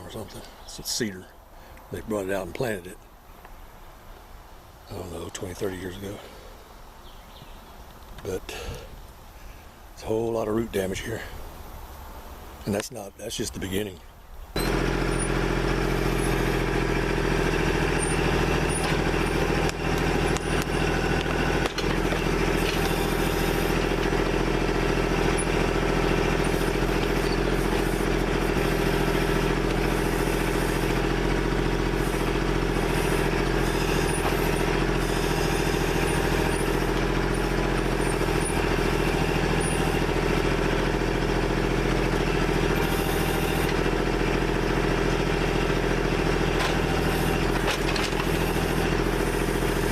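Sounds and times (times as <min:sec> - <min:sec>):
diesel engine running steadily: 0:14.5 - 0:49.9.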